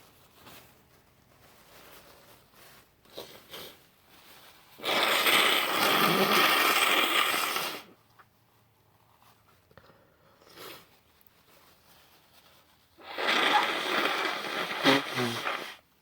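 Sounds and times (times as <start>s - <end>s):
sniffs: 1.8s - 8.0s, 9.8s - 11.0s, 12.4s - 15.9s
woman blowing her nose: 4.8s - 8.0s, 13.0s - 15.9s.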